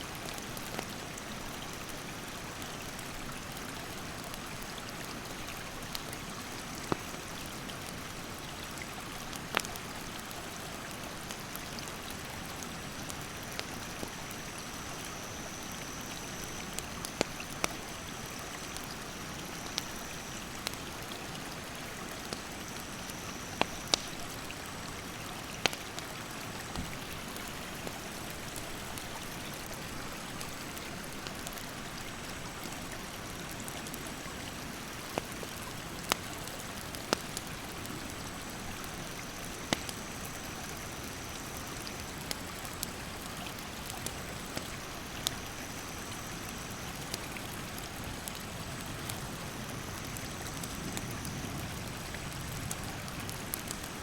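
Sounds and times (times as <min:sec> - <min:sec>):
campfire popping and crackling: 0:00.1 - 0:54.0.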